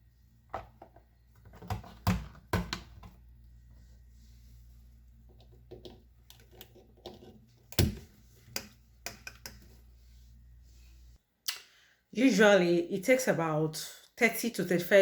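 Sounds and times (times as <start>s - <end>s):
low steady hum: 0.0s - 11.2s.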